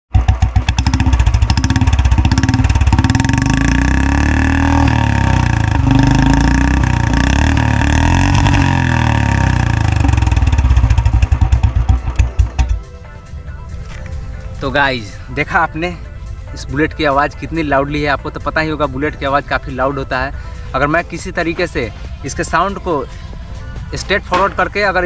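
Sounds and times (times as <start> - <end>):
motorcycle engine revving: 0.1 - 13.0, 21.4 - 25.0.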